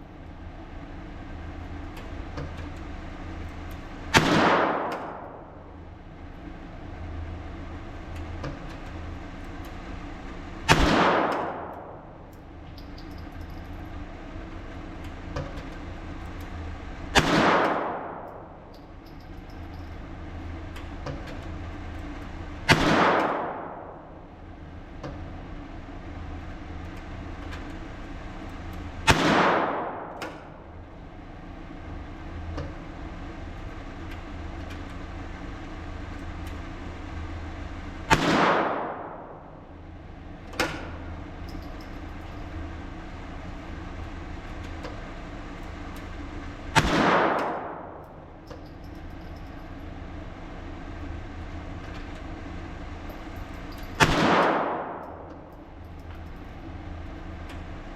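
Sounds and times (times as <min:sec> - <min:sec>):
steady low hum: 0:00.0 - 0:57.9
rifle shots: 0:04.1 - 0:05.8, 0:10.7 - 0:12.3, 0:17.2 - 0:18.7, 0:22.6 - 0:24.2, 0:29.1 - 0:30.6, 0:38.1 - 0:39.6, 0:46.7 - 0:48.2, 0:53.9 - 0:55.5
sharp click: 0:10.7 - 0:13.7, 0:29.1 - 0:30.6.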